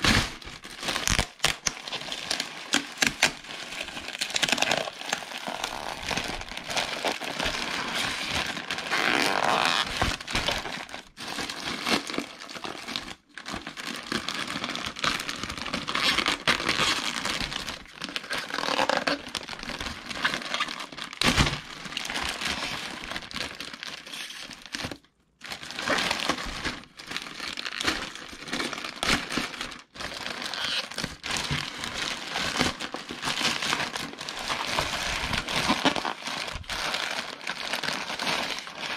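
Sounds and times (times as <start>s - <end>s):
packaging crinkling and rustling: 0.0s - 38.9s.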